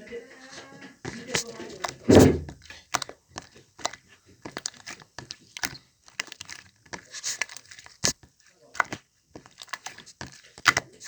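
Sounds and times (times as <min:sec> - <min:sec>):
slime squeezed by hand: 0:01.1 - 0:08.2
slime crackling pops: 0:01.1 - 0:11.0.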